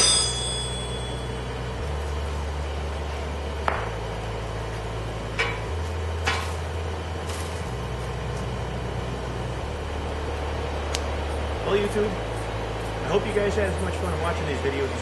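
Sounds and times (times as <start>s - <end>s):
sharp metallic clinks: 0.0s - 1.8s.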